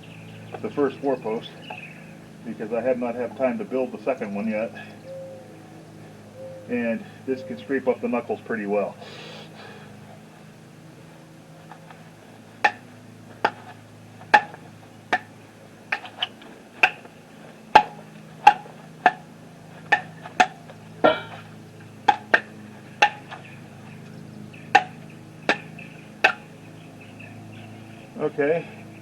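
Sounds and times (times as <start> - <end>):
knife chopping into wood: 12.6 - 17.2, 17.8 - 21.4, 22.1 - 23.5, 24.8 - 26.5.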